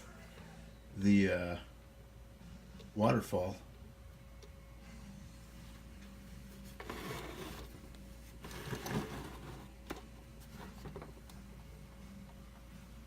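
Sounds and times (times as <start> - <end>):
faint steady hum: 0.0 - 13.0
rubbing and handling sounds: 6.3 - 11.3.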